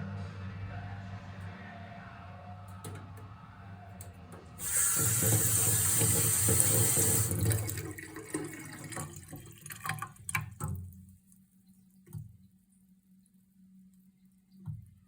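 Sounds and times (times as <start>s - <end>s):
faint low hum: 0.0s - 9.4s
sink water gurgling and popping: 4.6s - 11.1s.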